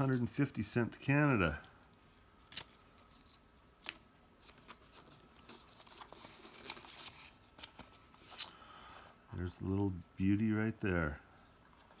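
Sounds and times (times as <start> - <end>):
paper and card rustling: 0.0 - 0.6, 1.3 - 8.7, 11.6 - 12.0.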